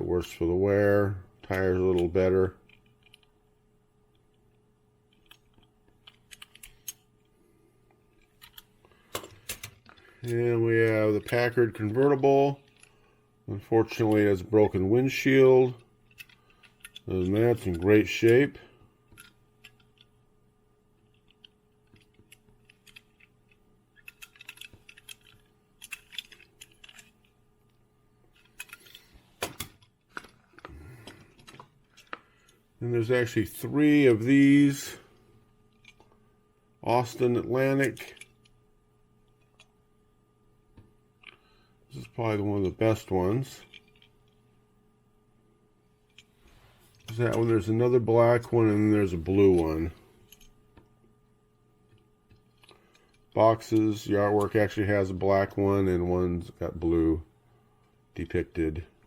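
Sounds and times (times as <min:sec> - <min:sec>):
metal toy cars clicking and clinking: 0:24.0 - 0:27.1.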